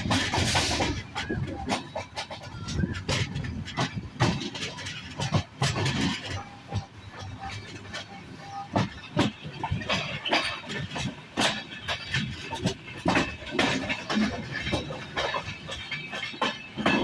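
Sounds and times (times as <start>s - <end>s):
train running rumble: 0.0s - 17.0s
train wheels clanking over joints: 0.0s - 17.0s.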